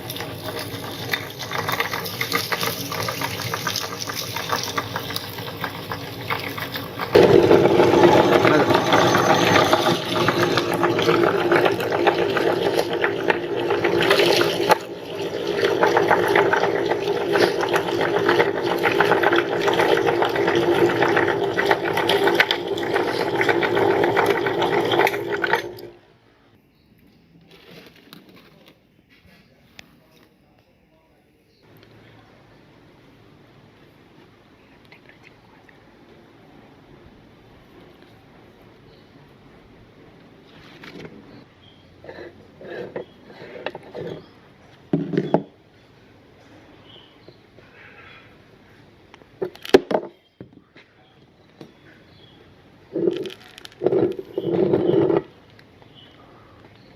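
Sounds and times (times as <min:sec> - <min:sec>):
popcorn crackling in grinder: 0:00.0 - 0:26.0, 0:52.9 - 0:55.3
electric meat grinder motor hum: 0:04.7 - 0:25.8.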